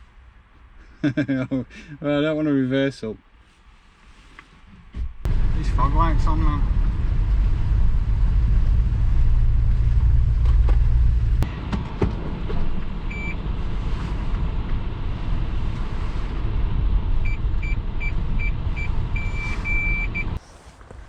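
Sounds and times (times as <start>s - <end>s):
car cabin rumble: 5.2s - 20.4s
parking sensor beeping: 13.1s - 13.4s, 17.2s - 20.4s
short beep: 13.1s - 13.4s, 17.2s - 20.4s.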